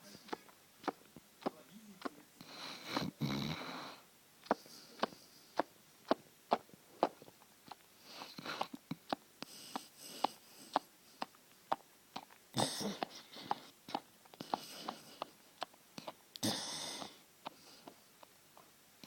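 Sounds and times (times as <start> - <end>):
dog sucking tongue wet clicks: 0.3 - 3.0, 4.4 - 18.3
dog snoring breaths: 2.4 - 7.3, 8.0 - 18.0.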